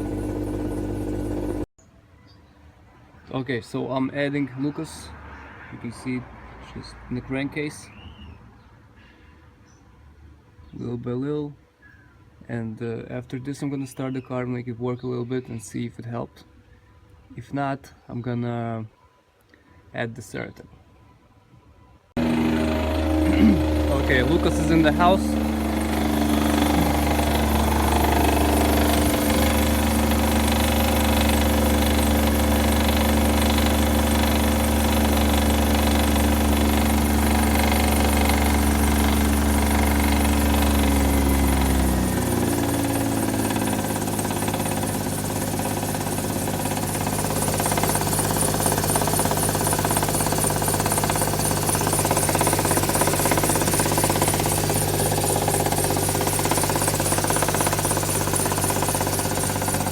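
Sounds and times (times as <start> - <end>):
car engine idling with knock: 0.0 - 1.7, 22.2 - 59.9.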